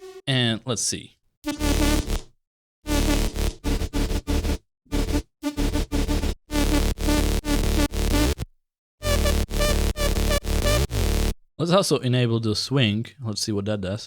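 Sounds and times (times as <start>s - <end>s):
electronic dance music: 1.5s - 2.2s.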